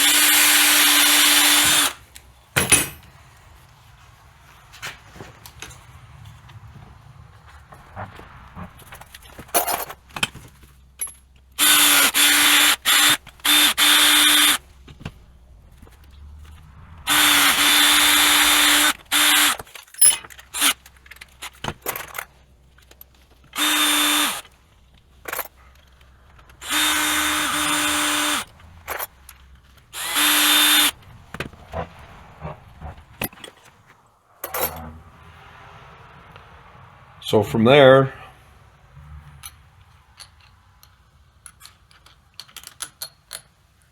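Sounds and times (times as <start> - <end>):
electric drill running: 0.0 - 2.0, 11.6 - 14.6, 17.1 - 19.6, 23.6 - 24.5, 26.6 - 28.5, 30.0 - 31.0
clicks and handling noises: 39.4 - 43.6.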